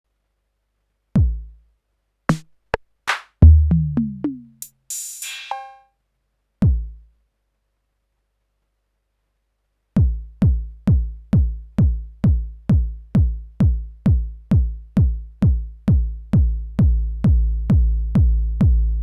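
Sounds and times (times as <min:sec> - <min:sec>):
deep kick drum: 0:01.2 - 0:01.5, 0:03.4 - 0:04.5, 0:06.6 - 0:07.0, 0:10.0 - 0:19.0
short snappy drum hits: 0:02.3 - 0:04.0
hi-hat tick: 0:04.6 - 0:05.8.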